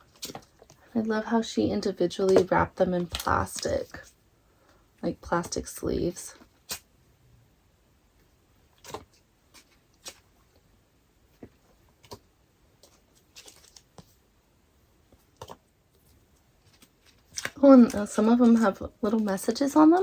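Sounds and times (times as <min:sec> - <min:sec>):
plastic sleeves crinkling: 0:02.1 - 0:04.1, 0:12.8 - 0:14.2, 0:15.3 - 0:20.0.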